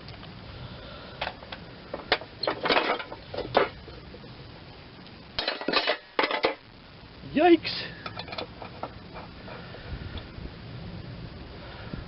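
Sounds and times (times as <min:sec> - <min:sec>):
metal clinks and scrapes: 0:02.0 - 0:04.1, 0:05.4 - 0:06.6, 0:08.0 - 0:09.7.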